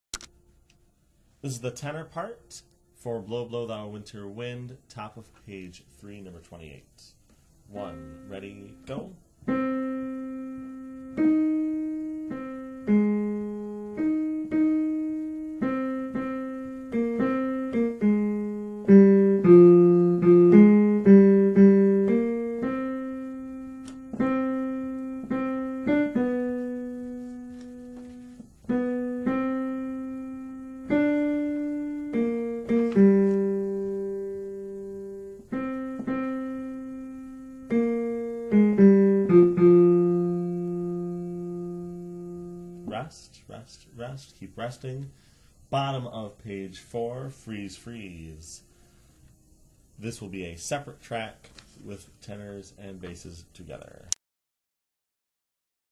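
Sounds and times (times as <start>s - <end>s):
piano melody: 7.7s - 43.1s.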